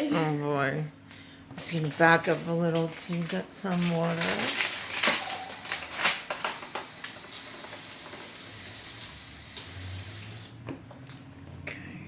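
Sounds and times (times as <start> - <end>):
water running: 6.6 - 10.6.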